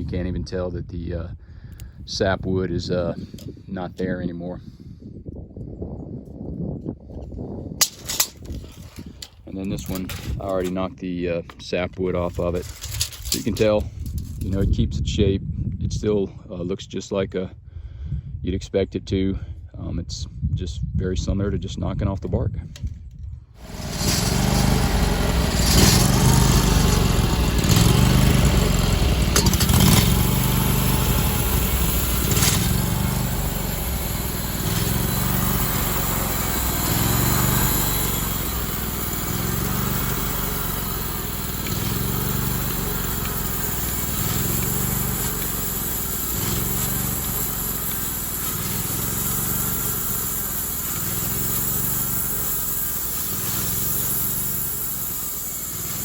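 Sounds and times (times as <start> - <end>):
sawmill engine running under load: 23.6 - 56.0.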